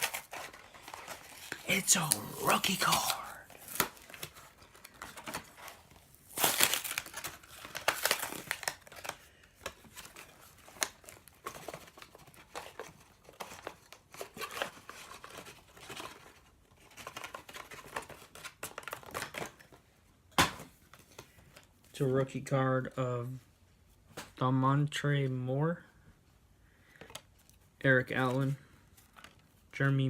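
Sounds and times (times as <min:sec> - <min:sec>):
wrapper crinkling and tearing: 0:00.0 - 0:16.3
cards rustling in hands: 0:00.0 - 0:19.8.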